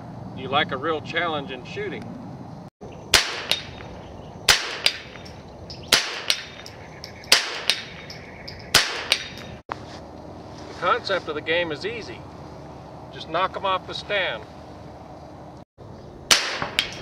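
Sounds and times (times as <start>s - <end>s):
rifle shots: 3.1s - 3.9s, 4.5s - 5.3s, 5.9s - 6.7s, 7.3s - 8.0s, 8.7s - 9.3s, 16.3s - 17.0s
bullet striking steel target: 3.1s - 9.6s, 16.3s - 17.0s.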